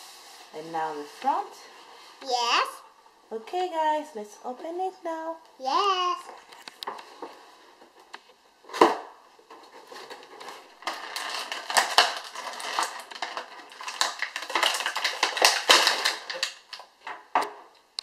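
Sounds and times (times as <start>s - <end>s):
plastic packaging crinkling: 9.5s - 17.1s
packaging tearing: 10.1s - 16.9s.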